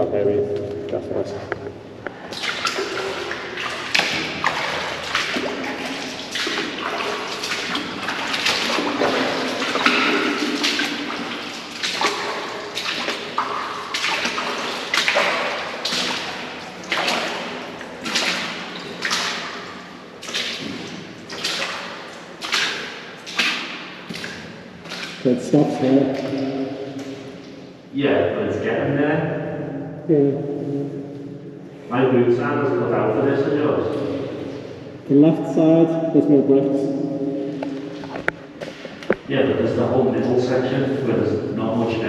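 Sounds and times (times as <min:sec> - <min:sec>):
boots wading through water: 0:02.0 - 0:27.9, 0:33.8 - 0:35.0, 0:37.2 - 0:39.3.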